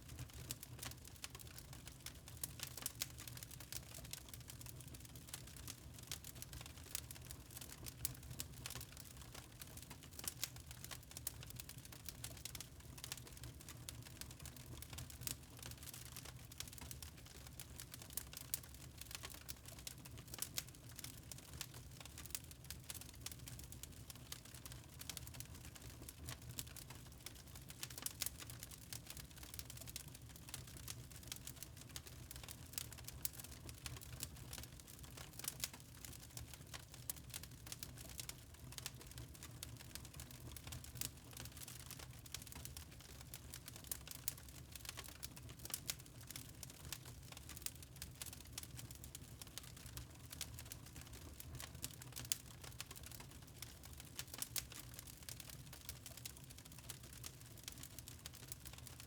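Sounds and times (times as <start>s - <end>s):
wood fire crackling: 0.1s - 59.0s.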